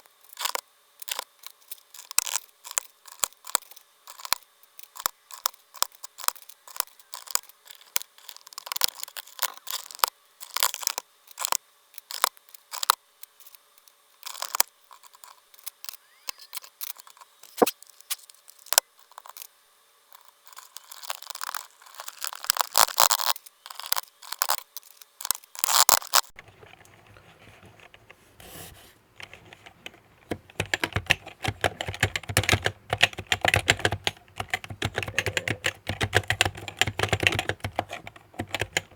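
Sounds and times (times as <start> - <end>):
rapid keyboard typing: 26.4 - 28.6, 29.2 - 38.9
plastic keycaps clicking and snapping: 29.2 - 38.9.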